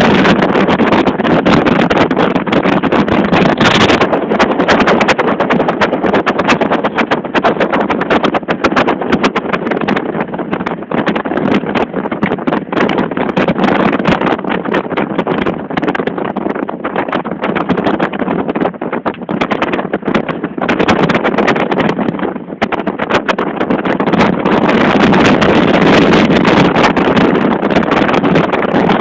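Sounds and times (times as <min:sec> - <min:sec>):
gusty wind buffeting microphone: 0:00.0 - 0:29.0.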